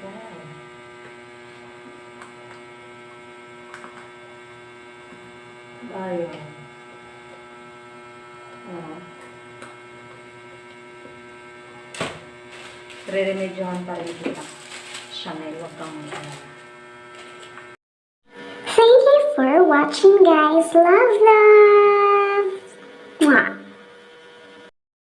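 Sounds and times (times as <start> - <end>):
electrical hum: 0.0 - 24.7
person speaking: 13.0 - 16.5.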